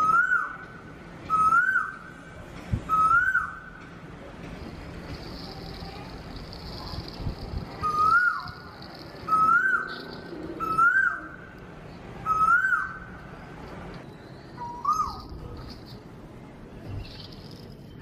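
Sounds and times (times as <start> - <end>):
whistled call: 1.3 - 2.1, 2.9 - 3.7, 7.8 - 8.6, 9.3 - 11.4, 12.2 - 13.1.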